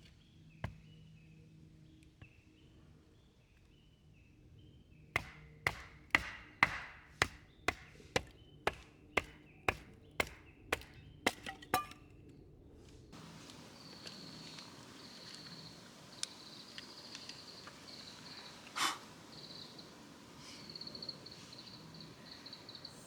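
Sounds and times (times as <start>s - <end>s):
firewood chopping strikes: 5.2s - 12.1s.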